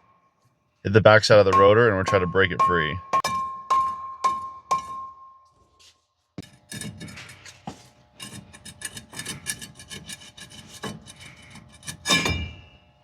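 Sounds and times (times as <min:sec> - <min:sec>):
wheel bearing grinding: 0:06.4 - 0:12.9.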